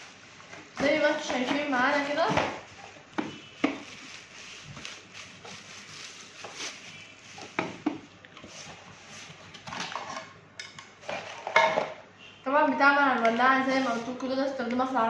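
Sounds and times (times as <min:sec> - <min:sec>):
packaging rustling: 0:00.1 - 0:07.6.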